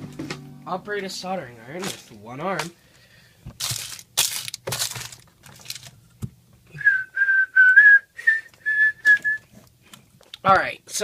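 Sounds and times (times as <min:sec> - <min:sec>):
rustling handling noise: 0:00.9 - 0:06.7
person whistling: 0:06.7 - 0:09.5.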